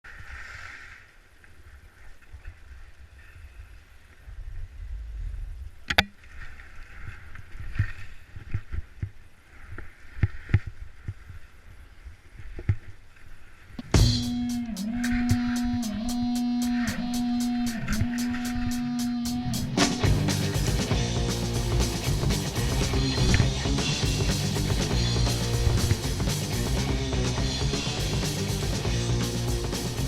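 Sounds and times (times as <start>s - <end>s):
wind rumbling on microphone: 2.6s - 8.5s
rock song: 13.8s - 30.0s.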